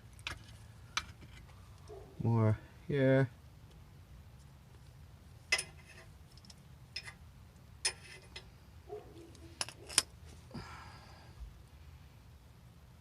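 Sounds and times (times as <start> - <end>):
tools and parts clinking: 5.5 - 7.2, 7.8 - 8.5, 9.2 - 10.2.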